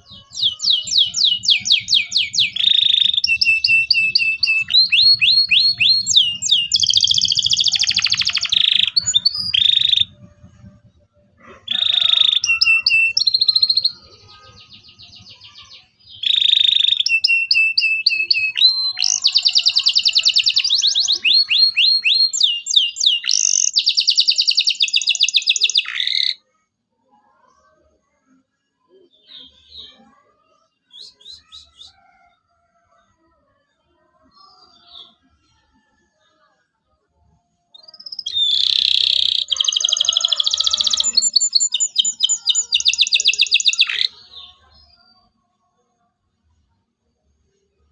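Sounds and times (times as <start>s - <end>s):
canary singing trills: 0.0s - 26.4s, 37.7s - 45.6s
faint bird chirps: 37.1s - 45.6s.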